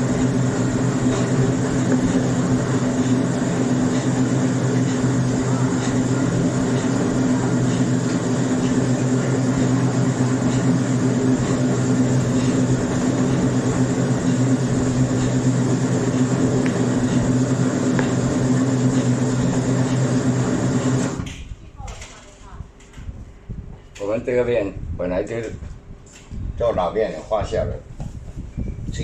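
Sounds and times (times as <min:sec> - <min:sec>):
machine hum with low drone: 0:00.0 - 0:22.9.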